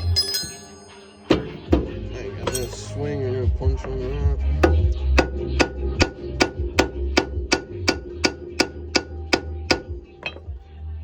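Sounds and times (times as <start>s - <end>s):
hammer striking steel punch: 1.2s - 2.9s, 4.6s - 10.6s.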